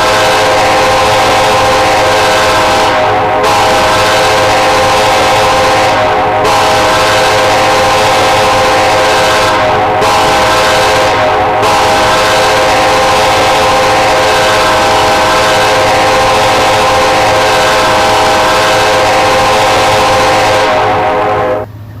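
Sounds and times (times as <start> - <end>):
locomotive air horn chord: 0.0 - 21.8.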